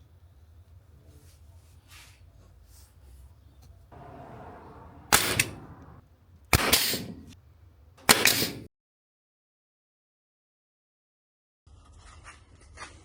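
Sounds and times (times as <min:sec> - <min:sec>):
sharp bangs: 0:03.9 - 0:07.4.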